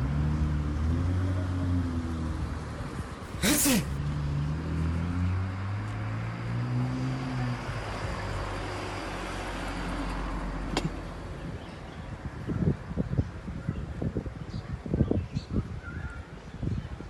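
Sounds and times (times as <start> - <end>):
street traffic: 0.0 - 12.2
loud burst of hiss: 3.3 - 4.0.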